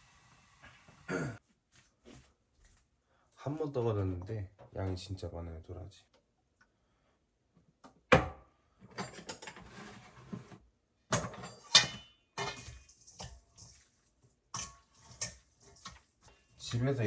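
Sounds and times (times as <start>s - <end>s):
utensils rattling: 11.2s - 13.9s, 14.6s - 16.1s.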